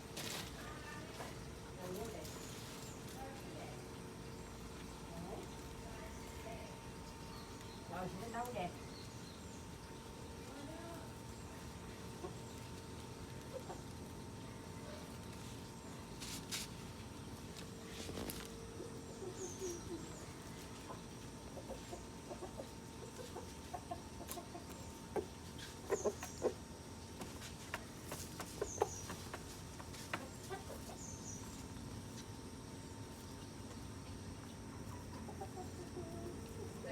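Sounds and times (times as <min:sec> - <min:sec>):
chickens clucking: 0:11.3 - 0:15.8, 0:17.0 - 0:36.9.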